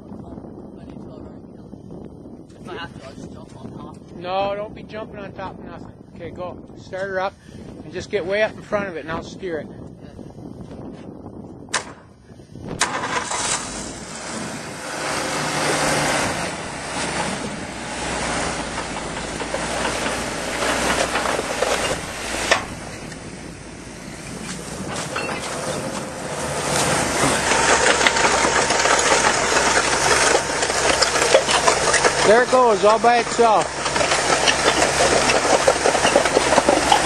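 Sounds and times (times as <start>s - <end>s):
tracked vehicle engine revving: 12.8s - 37.0s.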